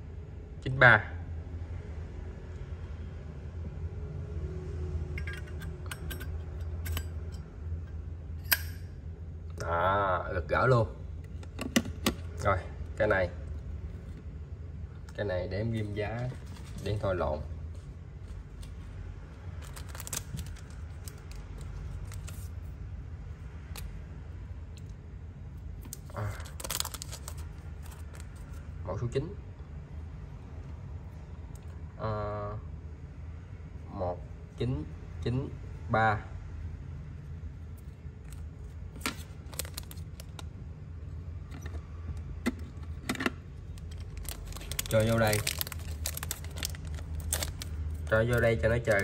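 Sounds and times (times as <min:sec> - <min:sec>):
steady low hum: 0:00.0 - 0:49.0
hands handling small objects: 0:19.6 - 0:22.6, 0:25.8 - 0:28.6, 0:42.6 - 0:49.0.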